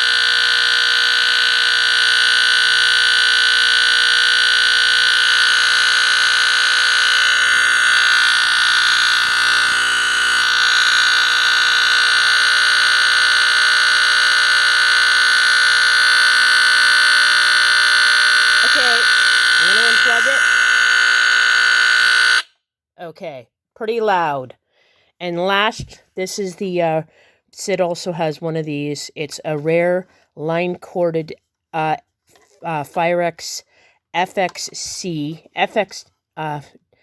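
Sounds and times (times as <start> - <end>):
smoke detector buzzer alarm: 0.0 - 22.6.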